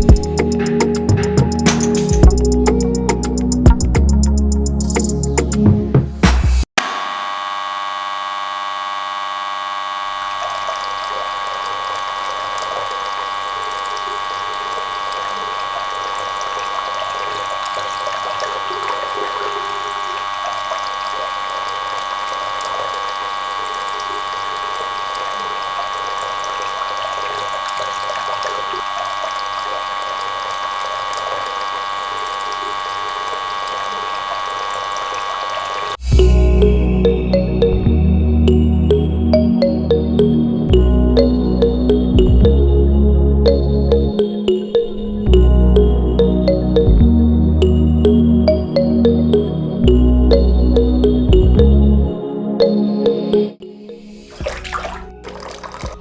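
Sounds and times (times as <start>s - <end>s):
small motorised mechanism whining: 6.8s - 36.1s.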